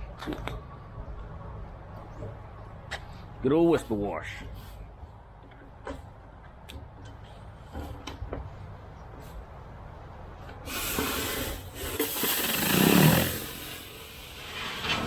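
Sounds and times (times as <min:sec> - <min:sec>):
pressurized water spraying concrete: 0:10.7 - 0:14.9.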